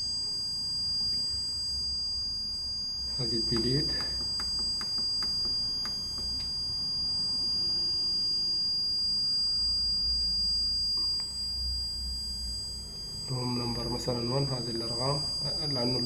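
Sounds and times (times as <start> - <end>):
steady high-pitched electronic tone: 0.0 - 16.0.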